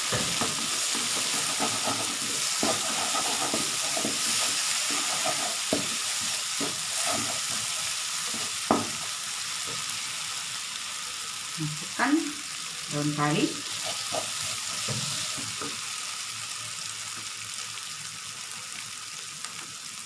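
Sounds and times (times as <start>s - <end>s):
spatula scraping and knocking pan: 0.0s - 9.8s, 13.7s - 15.8s
spice paste sizzling in oil: 0.0s - 20.0s.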